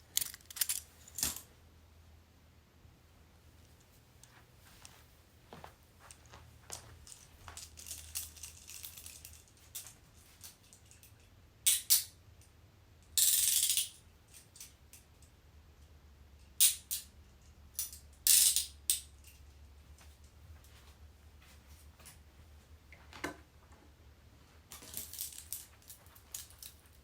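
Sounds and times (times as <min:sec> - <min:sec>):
handcuffs clinking: 0:07.0 - 0:12.1, 0:24.8 - 0:27.0.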